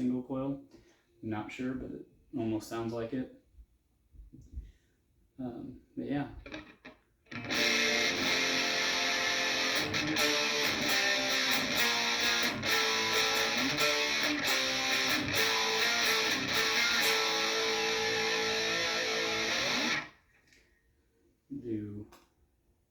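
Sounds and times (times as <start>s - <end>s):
electric guitar chords and notes: 6.4s - 20.2s.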